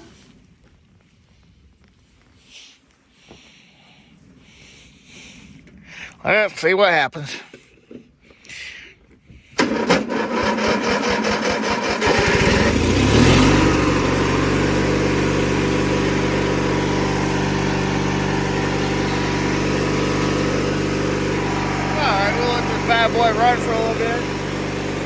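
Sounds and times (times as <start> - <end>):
electric starter cranking: 9.6 - 25.0
lawnmower engine running: 9.6 - 25.0.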